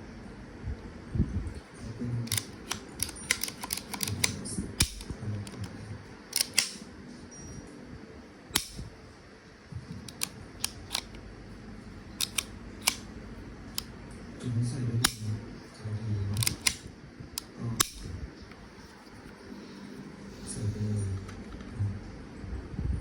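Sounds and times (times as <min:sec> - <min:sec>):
pistol parts clicking and snapping: 0:02.3 - 0:05.7, 0:06.3 - 0:06.8, 0:08.6 - 0:08.9, 0:10.0 - 0:11.2, 0:12.2 - 0:13.0, 0:15.0 - 0:15.3, 0:16.4 - 0:16.9, 0:17.8 - 0:18.0.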